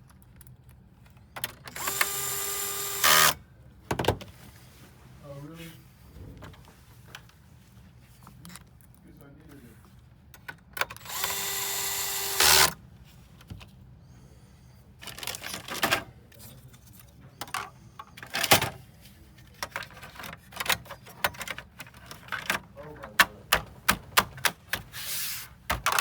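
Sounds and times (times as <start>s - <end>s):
electric screwdriver whining: 1.7s - 3.4s, 11.0s - 12.8s.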